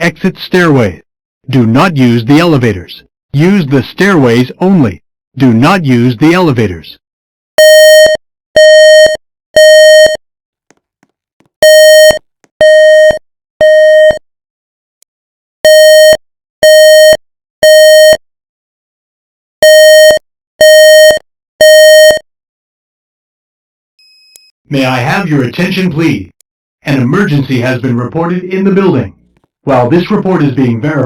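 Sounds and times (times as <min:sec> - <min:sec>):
fire alarm beeping: 0:07.6 - 0:10.2, 0:11.6 - 0:14.2, 0:19.6 - 0:22.2.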